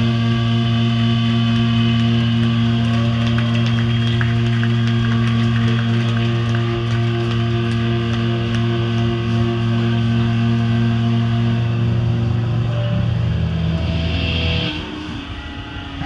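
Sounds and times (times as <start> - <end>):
distorted guitar drone: 0.0 - 16.0.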